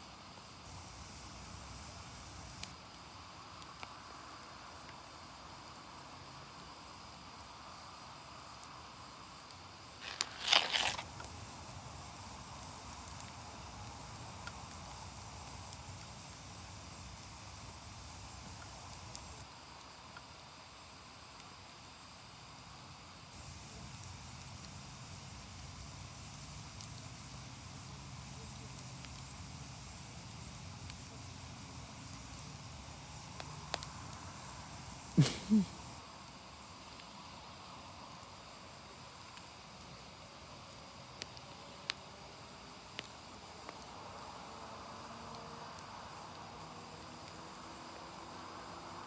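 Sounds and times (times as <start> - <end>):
fire crackling: 0.1 - 48.3
fire popping and snapping: 0.7 - 3.0, 9.4 - 19.5, 23.4 - 36.0.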